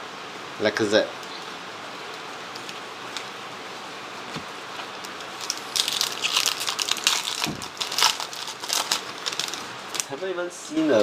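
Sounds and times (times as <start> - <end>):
foil wrapper crinkling: 4.8 - 10.2.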